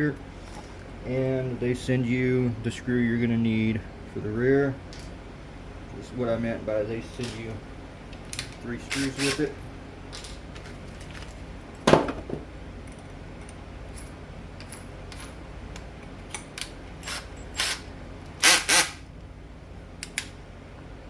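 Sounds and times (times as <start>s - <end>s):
tools knocking on work surface: 11.9s - 12.5s.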